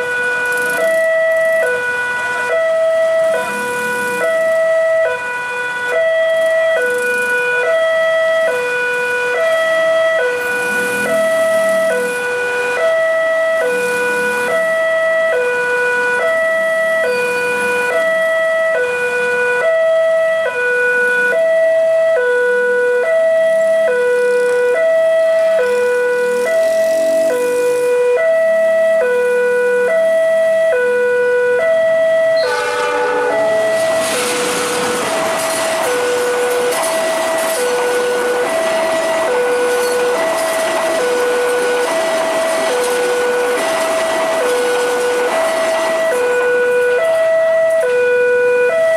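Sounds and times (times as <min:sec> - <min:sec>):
level-crossing two-tone alarm: 0:00.0 - 0:48.9
train rushing: 0:10.3 - 0:12.8, 0:25.4 - 0:27.9, 0:32.4 - 0:47.8.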